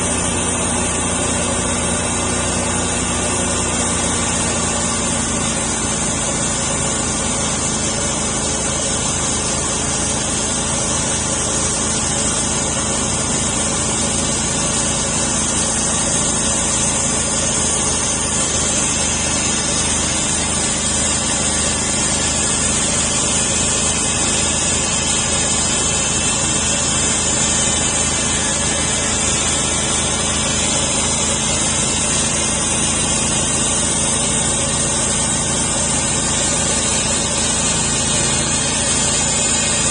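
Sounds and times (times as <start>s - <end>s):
sawmill engine sawing log: 0.0s - 39.9s.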